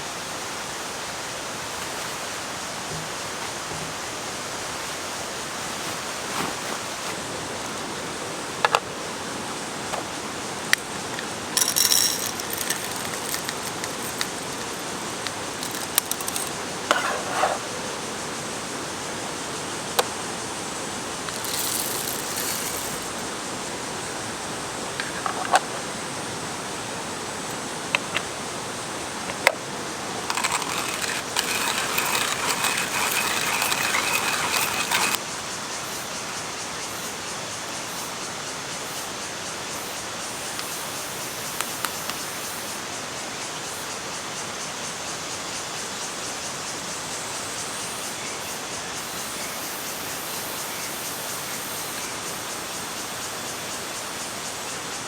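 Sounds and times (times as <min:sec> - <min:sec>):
rustling: 0:01.3 - 0:03.7, 0:04.6 - 0:07.4, 0:11.2 - 0:17.7, 0:21.3 - 0:23.3, 0:30.1 - 0:35.2.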